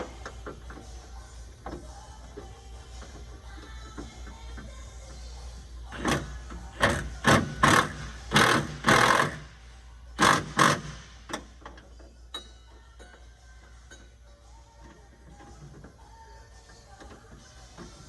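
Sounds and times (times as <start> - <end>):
background music: 0.0 - 18.0.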